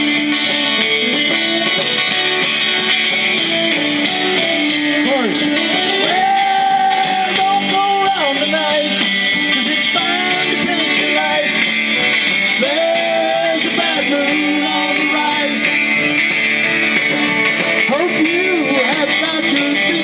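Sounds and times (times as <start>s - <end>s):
strummed guitars: 0.0s - 20.0s
person singing: 4.6s - 15.8s, 17.8s - 20.0s.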